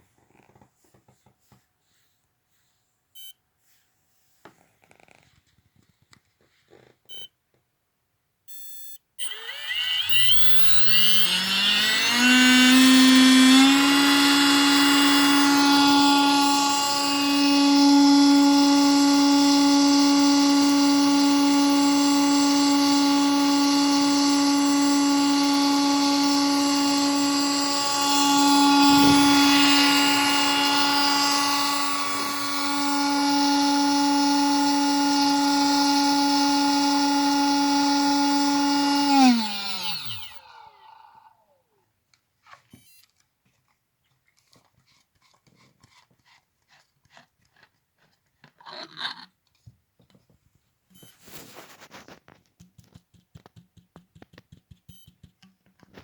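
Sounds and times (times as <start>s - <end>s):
vacuum motor high-pitched whine: 9.2s - 41.5s.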